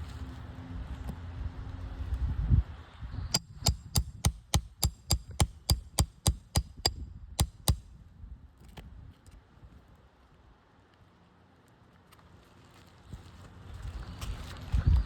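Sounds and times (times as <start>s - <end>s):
hammer striking metal nail puller: 3.4s - 7.8s.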